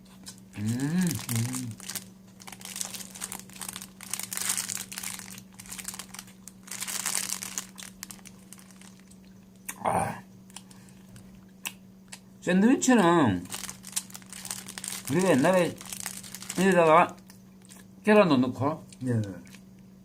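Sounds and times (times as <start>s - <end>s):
steady low hum: 0.0s - 20.0s
plastic wrapper crinkling: 0.5s - 9.3s, 13.4s - 17.3s.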